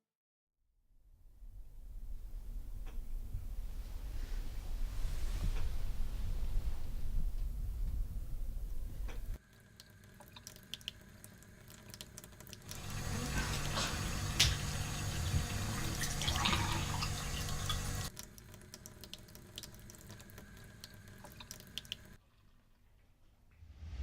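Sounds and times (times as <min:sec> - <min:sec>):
faint water drips: 0:09.4 - 0:23.6
tap running into sink: 0:12.7 - 0:18.1.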